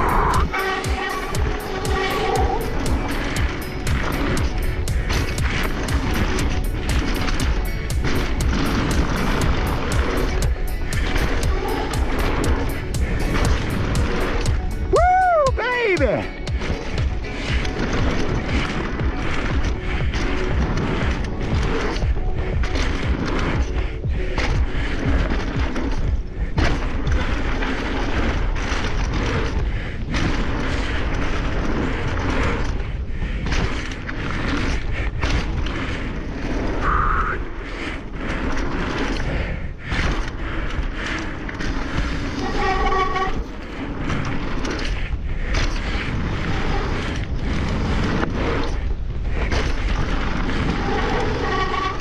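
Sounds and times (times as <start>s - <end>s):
high-pitched squeal: 0.0s - 4.6s, 36.8s - 37.7s
bike knocks and rattles: 0.0s - 36.8s, 38.0s - 52.0s
tyres rumbling on dirt: 0.0s - 52.0s
wind buffeting microphone: 0.0s - 52.0s.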